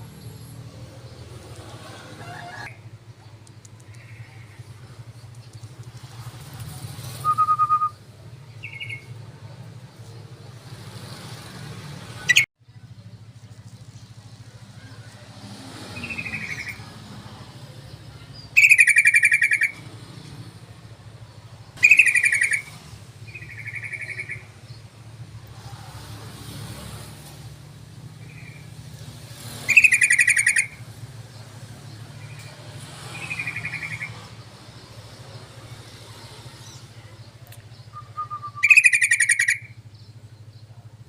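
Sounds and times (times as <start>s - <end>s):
bulbul calling: 7.2s - 9.6s, 12.2s - 12.5s, 16.0s - 16.9s, 17.8s - 19.9s, 21.3s - 24.9s, 28.1s - 28.8s, 29.4s - 34.8s, 36.7s - 40.9s.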